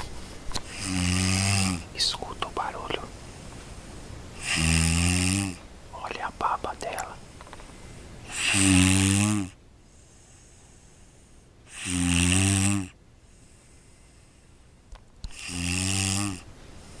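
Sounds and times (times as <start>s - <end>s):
person snoring: 0.7s - 1.9s, 4.4s - 5.6s, 8.3s - 9.6s, 11.7s - 13.0s, 15.3s - 16.5s
quiet breathing: 1.9s - 4.7s, 5.9s - 8.7s, 9.8s - 11.9s, 13.1s - 15.6s, 16.7s - 17.0s.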